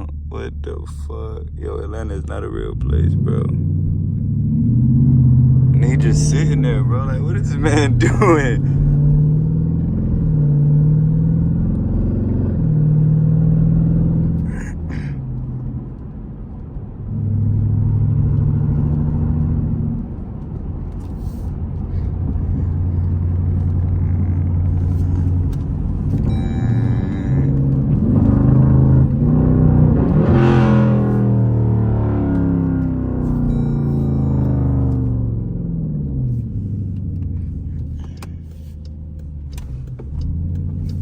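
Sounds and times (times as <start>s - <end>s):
car engine rumbling at low revs: 0.0s - 41.0s.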